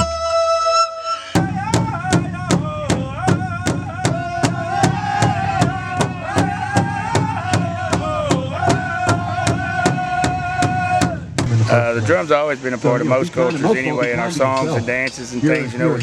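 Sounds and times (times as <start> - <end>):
flute melody: 0.0 - 2.0
steady drumbeat: 1.4 - 16.0.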